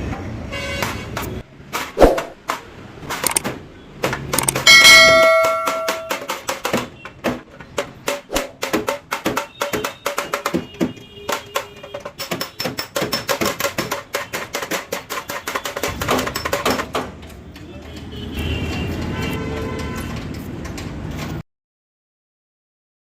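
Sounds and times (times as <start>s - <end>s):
music with fast percussive beat: 4.6s - 7.2s, 7.8s - 16.7s
ringing bell-like note: 4.7s - 6.2s.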